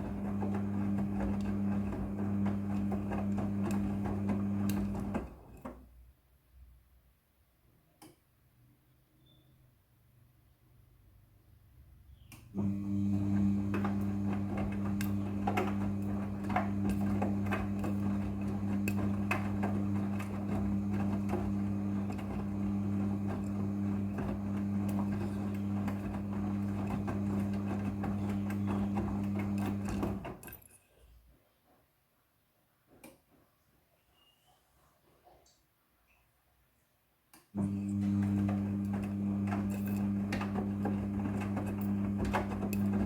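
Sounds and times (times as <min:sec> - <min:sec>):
washing machine humming: 0:00.0 - 0:05.7, 0:12.5 - 0:30.6, 0:37.6 - 0:43.0.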